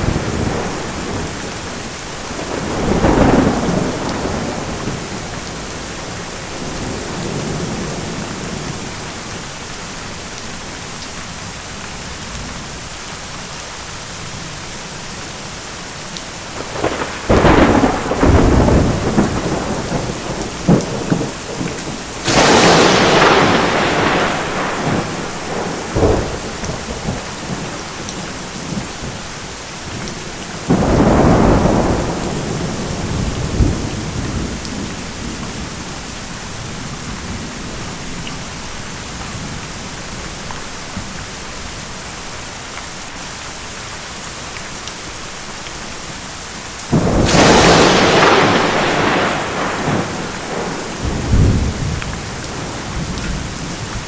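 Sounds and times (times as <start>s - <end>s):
rolling thunder: 0.0s - 9.3s, 16.6s - 29.2s, 29.9s - 38.5s, 46.9s - 54.0s
heavy rain: 0.0s - 54.0s.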